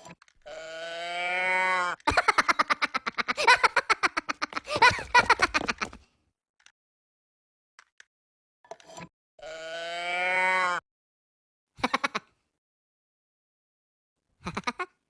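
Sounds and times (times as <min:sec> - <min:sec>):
cow mooing: 0:00.5 - 0:02.0, 0:09.4 - 0:10.8.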